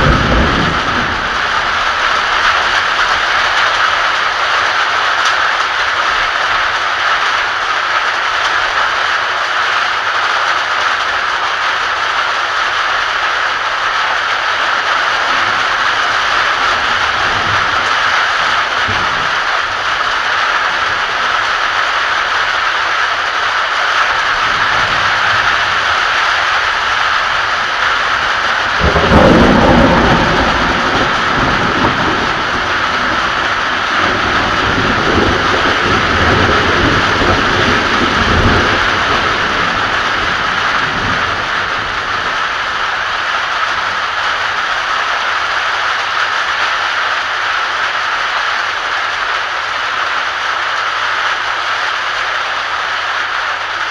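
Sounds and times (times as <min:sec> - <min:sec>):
thunder crack and rumble: 0:00.0 - 0:10.3, 0:13.0 - 0:22.8, 0:23.8 - 0:45.3
heavy rain hissing: 0:00.0 - 0:53.9.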